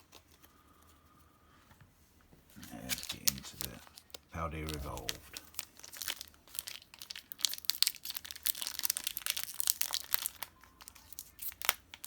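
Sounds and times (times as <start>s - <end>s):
foil wrapper crinkling and tearing: 2.6s - 12.0s.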